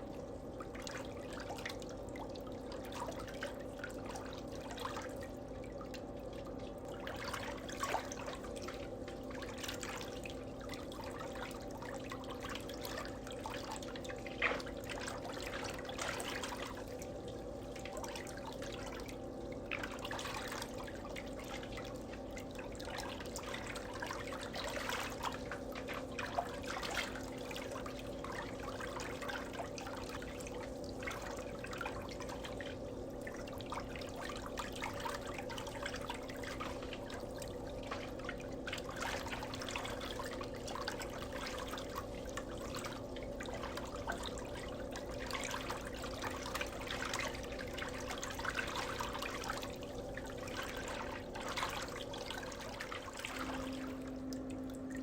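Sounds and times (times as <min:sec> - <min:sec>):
water dripping and trickling: 0:00.0 - 0:55.0
low hum: 0:52.4 - 0:55.0.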